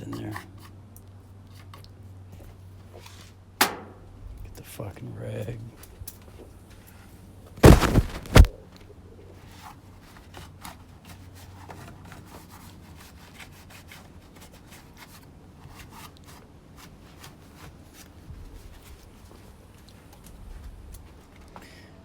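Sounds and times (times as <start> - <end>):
loud knocks: 7.6 - 8.5.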